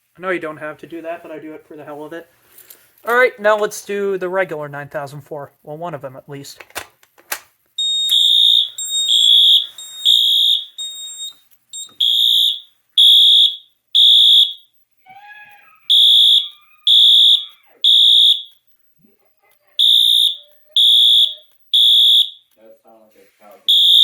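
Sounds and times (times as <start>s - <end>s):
fire alarm horn blasts: 7.8s - 11.3s, 12.0s - 14.7s, 15.4s - 18.6s, 19.8s - 22.5s, 23.7s - 24.0s
steady alarm tone: 7.8s - 14.8s, 15.4s - 18.9s, 19.8s - 22.5s, 23.7s - 24.0s.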